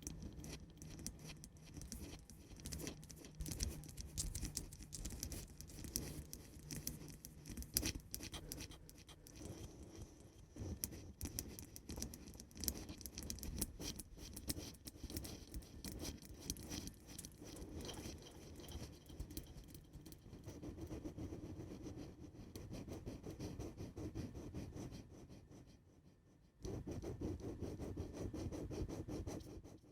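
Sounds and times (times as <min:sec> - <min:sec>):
scratching and tapping on cork and wood: 0:00.0 - 0:21.8.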